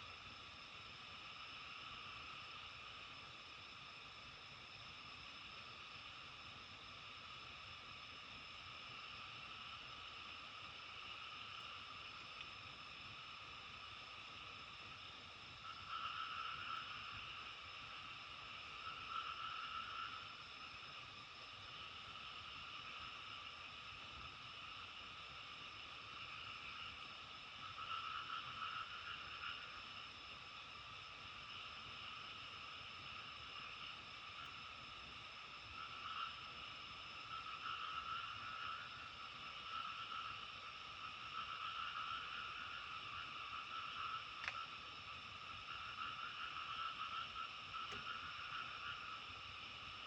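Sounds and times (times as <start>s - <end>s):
low background hiss: 0.0s - 50.0s
chorus of frogs calling: 7.2s - 50.0s.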